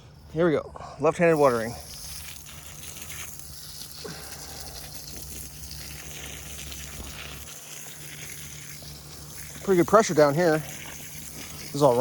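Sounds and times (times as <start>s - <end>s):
garden hose spraying water: 0.0s - 12.0s.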